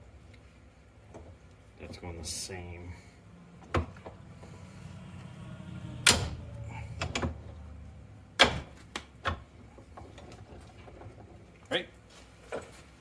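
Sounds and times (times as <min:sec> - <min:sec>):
sharp metal knocks and clunks: 0:06.0 - 0:06.4, 0:08.4 - 0:11.3.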